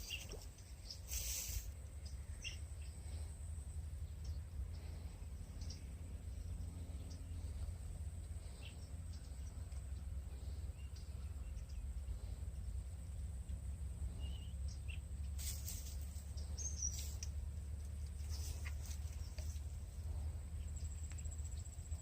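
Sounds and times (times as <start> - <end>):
faint bird chirps: 0.0 - 17.5
high insect hum: 0.0 - 22.0.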